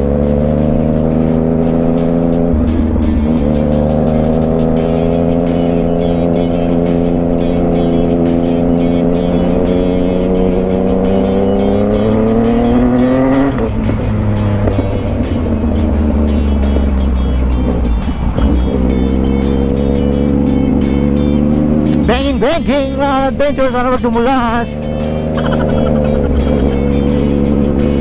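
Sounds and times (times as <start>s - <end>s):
motorcycle engine while riding: 0.0s - 28.0s.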